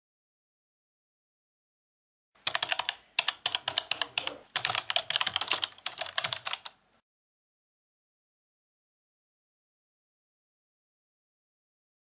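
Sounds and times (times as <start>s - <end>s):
fast typing on computer keyboard: 2.4s - 6.8s.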